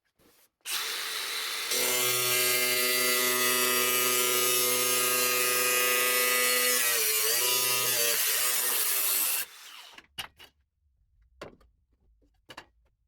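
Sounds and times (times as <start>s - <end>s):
power tool cutting sheet steel: 0.7s - 10.0s.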